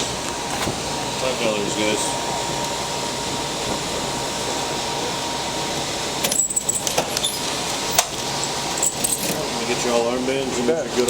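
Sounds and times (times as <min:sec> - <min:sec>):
steady background noise: 0:00.0 - 0:11.0
metallic jingling and clicking: 0:08.8 - 0:09.4.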